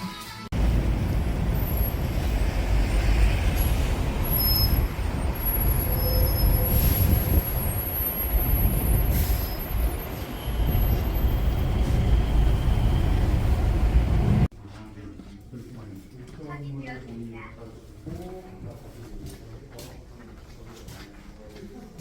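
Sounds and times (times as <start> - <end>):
low rumble of vehicle noise: 0.5 - 14.5.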